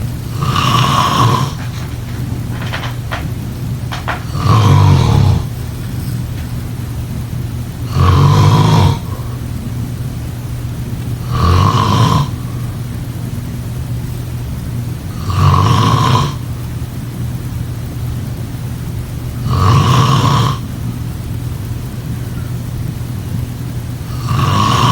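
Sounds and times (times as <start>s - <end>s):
steady low rumble: 0.0s - 15.2s
person snoring: 0.2s - 3.2s, 3.9s - 6.2s, 7.8s - 9.5s, 11.2s - 12.8s, 15.1s - 16.5s, 19.4s - 20.6s, 24.1s - 24.9s.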